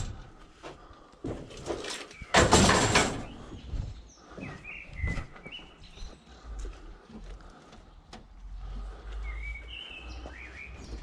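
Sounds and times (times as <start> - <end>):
metal panels knocking: 2.3 - 3.5
bird chirps: 3.2 - 6.3, 9.1 - 11.0.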